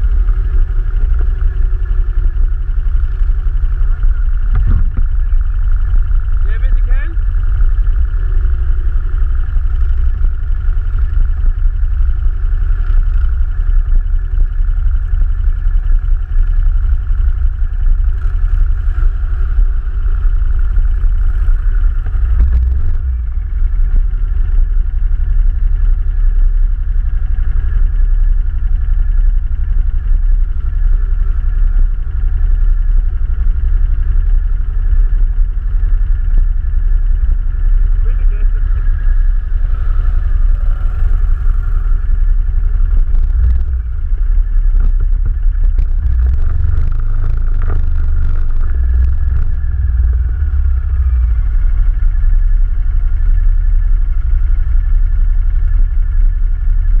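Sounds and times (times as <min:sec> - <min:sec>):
atv engine running: 0:00.0 - 0:57.0.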